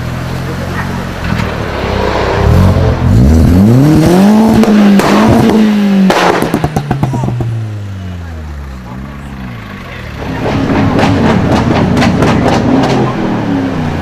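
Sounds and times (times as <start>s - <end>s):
car engine idling and revving: 0.0s - 14.0s
exhaust pops and crackles: 4.4s - 7.6s, 10.2s - 13.2s
exhaust bang: 10.1s - 13.4s.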